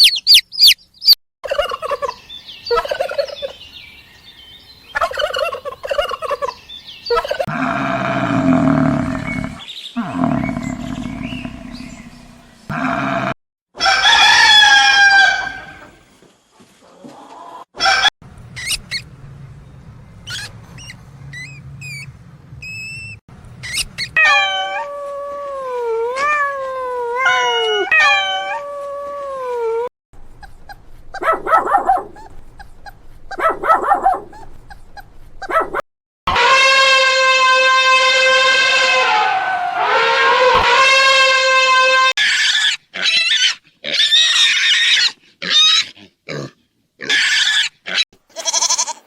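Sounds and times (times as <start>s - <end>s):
dogs howling and whining: 24.2s - 29.9s.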